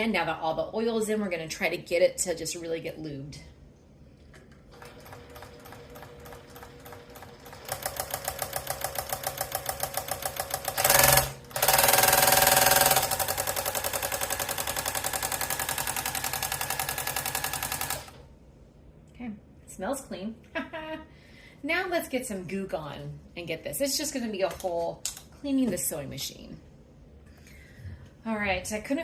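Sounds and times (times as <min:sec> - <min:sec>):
electric sewing machine stitching: 0:04.7 - 0:18.3.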